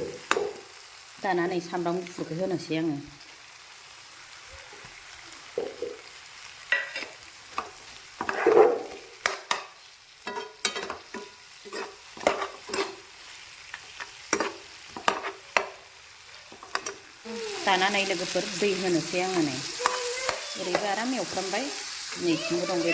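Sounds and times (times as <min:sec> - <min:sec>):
food sizzling in a pan: 0:00.0 - 0:22.9
spatula scraping a pan: 0:06.7 - 0:15.8.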